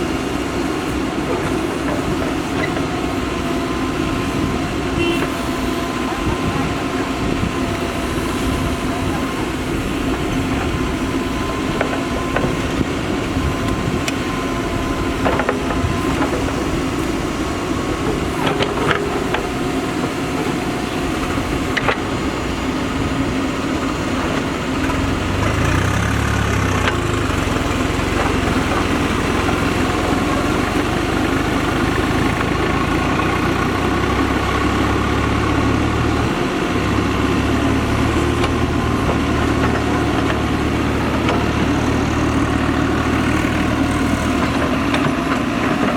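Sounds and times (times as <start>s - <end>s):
deep engine drone: 0.0s - 45.9s
diesel engines running: 0.0s - 45.9s.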